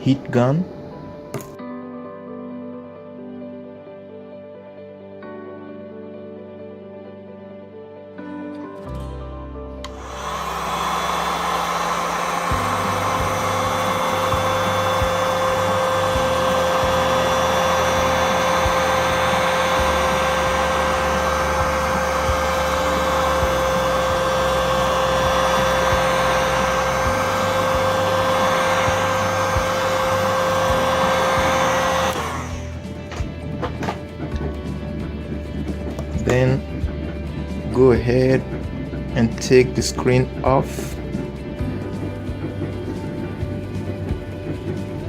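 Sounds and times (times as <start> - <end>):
heat gun blowing and whining: 9.8 - 34.4.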